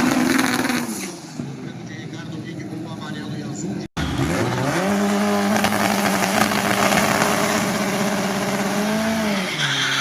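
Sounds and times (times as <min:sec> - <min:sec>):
racing car engine revving: 0:04.0 - 0:10.0.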